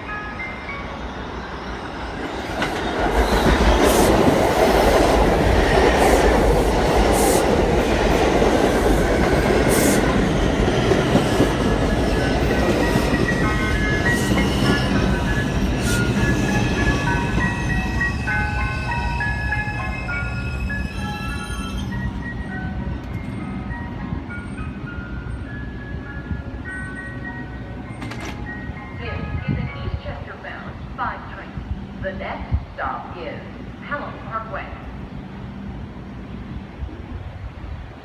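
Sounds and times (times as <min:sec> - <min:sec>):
train wheels rumbling over rail joints: 0:02.2 - 0:21.4.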